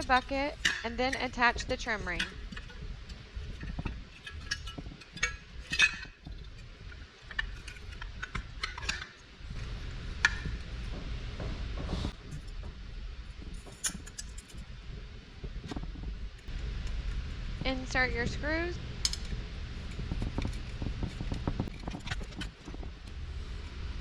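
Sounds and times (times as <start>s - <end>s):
metal and glass clinking: 0.0s - 11.0s
low steady rumble: 0.0s - 24.0s.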